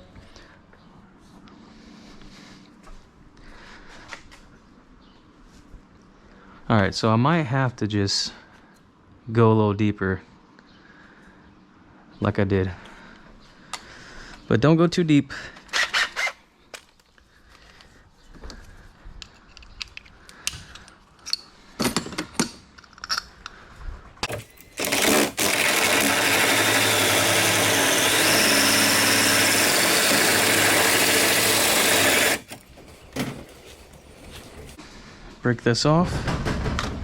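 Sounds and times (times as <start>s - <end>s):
light clicks and handling noises: 16.7s - 21.5s
power tool cutting: 24.3s - 34.8s.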